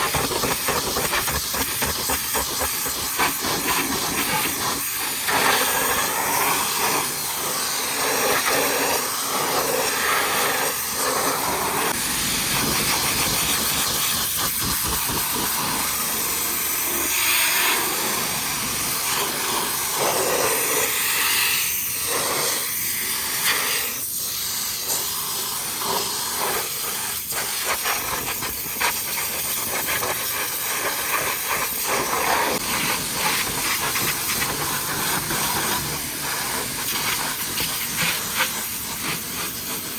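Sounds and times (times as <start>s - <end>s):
pressure washer jet spraying: 0.0s - 39.9s.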